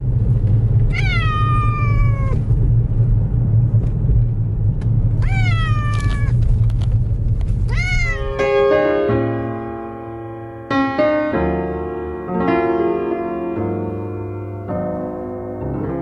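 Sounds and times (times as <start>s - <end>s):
steady low rumble: 0.0s - 10.7s
cat meowing: 0.9s - 2.4s, 5.2s - 6.4s, 7.6s - 8.6s.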